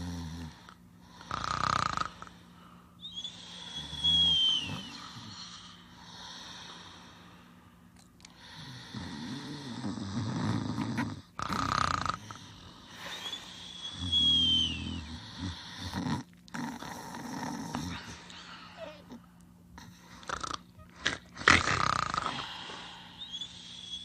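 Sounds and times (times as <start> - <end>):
cartoon snoring: 1.2 - 2.3, 8.4 - 12.7, 13.9 - 18.1, 20.2 - 22.6
high falling whistle: 13.2 - 15.1.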